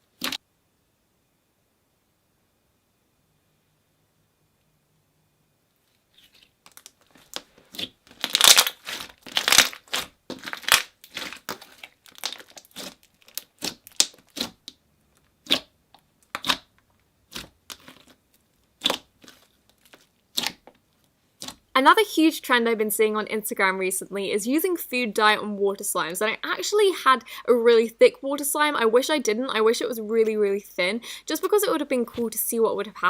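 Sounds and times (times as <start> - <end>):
slime squelching and popping: 6.2 - 14.8, 15.4 - 20.8, 21.4 - 21.7.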